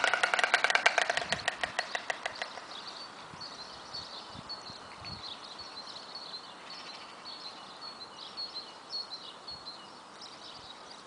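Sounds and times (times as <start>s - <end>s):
songbirds chirping: 0.0s - 11.0s.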